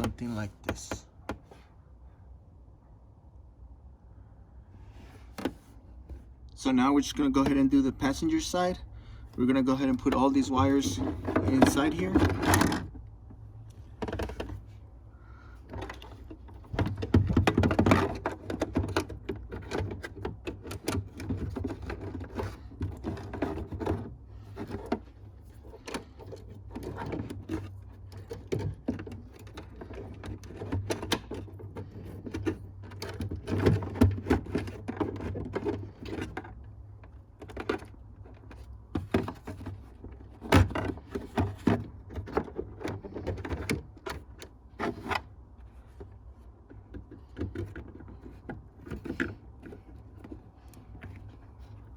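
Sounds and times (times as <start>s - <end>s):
plastic clicks and knocks: 15.7s - 45.3s.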